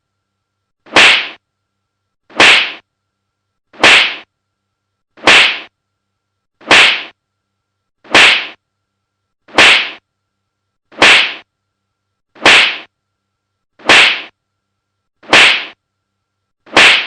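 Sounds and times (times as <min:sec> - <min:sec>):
slap sound effect: 0:00.9 - 0:01.4, 0:02.3 - 0:02.8, 0:03.8 - 0:04.3, 0:05.2 - 0:05.7, 0:06.6 - 0:07.2, 0:08.1 - 0:08.6, 0:09.5 - 0:10.0, 0:10.9 - 0:11.4, 0:12.4 - 0:12.9, 0:13.8 - 0:14.3, 0:15.2 - 0:15.8, 0:16.7 - 0:17.0.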